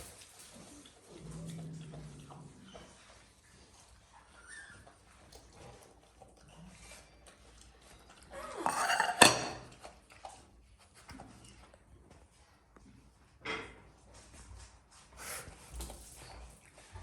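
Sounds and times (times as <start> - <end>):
raccoon scraping pan: 8.5 - 9.7
pan clattering rattle: 8.6 - 9.7.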